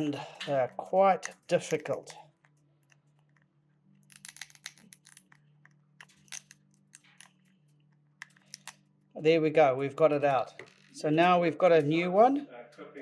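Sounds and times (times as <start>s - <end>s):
screwdriver clicks and scrapes: 8.2s - 8.8s.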